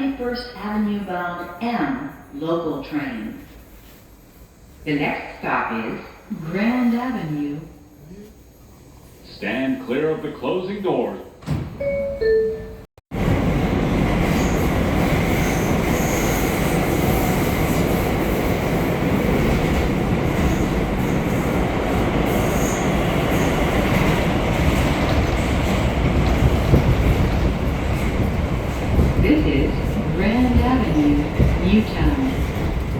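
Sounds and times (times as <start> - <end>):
two-tone door chime: 11.8 - 12.8
train wheels rumbling on rail: 13.1 - 32.9.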